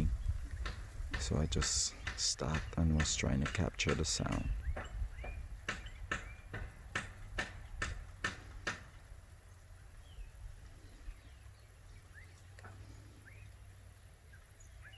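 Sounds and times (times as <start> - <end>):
tropical birds calling: 0.0 - 14.9
faint bird chirps: 9.9 - 14.9.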